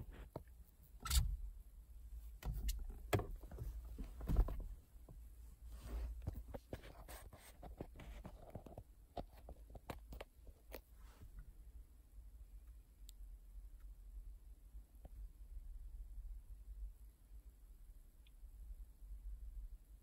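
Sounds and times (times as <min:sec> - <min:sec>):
low steady rumble: 0:00.0 - 0:20.0.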